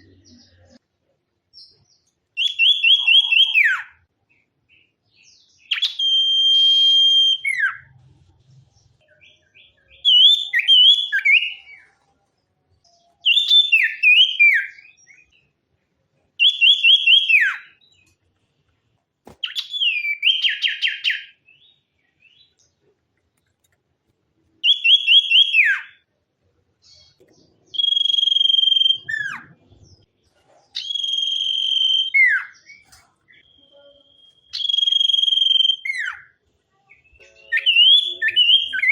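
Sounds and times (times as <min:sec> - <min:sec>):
songbird whistling: 0:02.4 - 0:04.0, 0:05.6 - 0:07.9, 0:09.1 - 0:11.9, 0:13.0 - 0:15.4, 0:16.4 - 0:17.9, 0:19.4 - 0:21.7, 0:24.6 - 0:26.0, 0:27.7 - 0:29.6, 0:30.8 - 0:36.3, 0:37.2 - 0:38.9.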